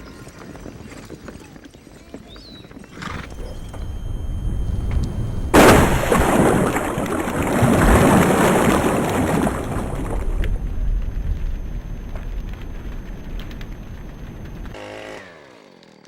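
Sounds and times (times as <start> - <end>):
heavy rumbling: 3.0 - 14.8
loud crash: 3.2 - 14.8.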